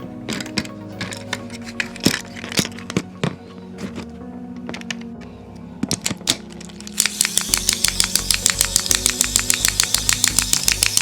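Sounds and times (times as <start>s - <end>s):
toy train motor clicking: 6.7s - 11.0s.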